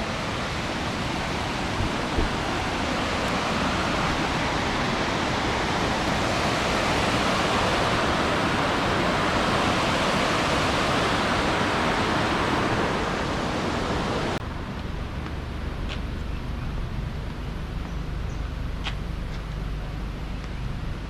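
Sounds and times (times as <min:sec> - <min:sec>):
waterfall splashing: 0:00.0 - 0:14.4.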